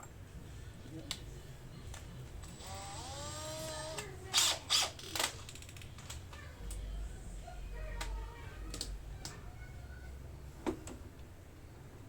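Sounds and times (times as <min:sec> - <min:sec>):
power tool whirring: 0:02.6 - 0:05.2.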